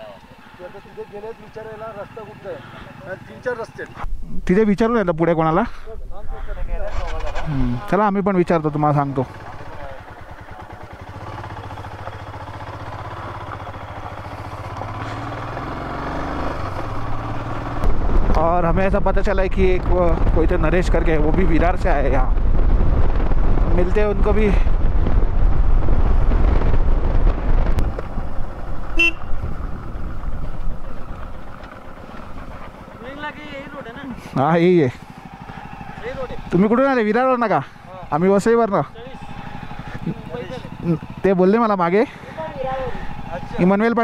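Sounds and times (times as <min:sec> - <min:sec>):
motorcycle engine running: 0:00.0 - 0:04.1, 0:06.6 - 0:44.0
short horn toot: 0:28.9 - 0:29.4.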